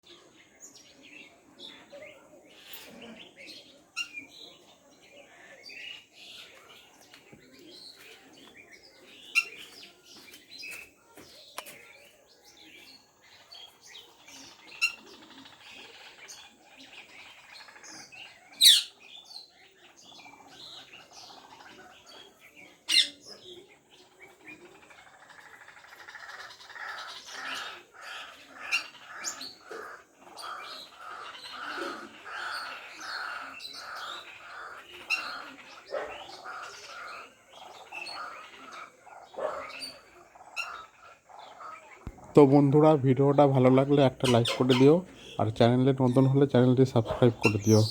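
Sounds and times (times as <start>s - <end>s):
small birds chirping: 0.0s - 47.9s
fast repeated chatter: 19.9s - 47.9s.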